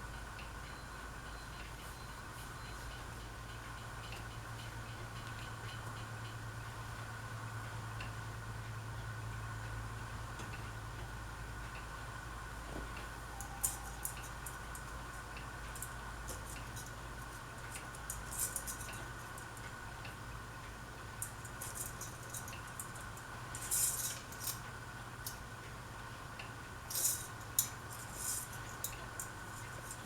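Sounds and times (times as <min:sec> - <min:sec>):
ceiling fan motor hum: 0:00.0 - 0:30.0.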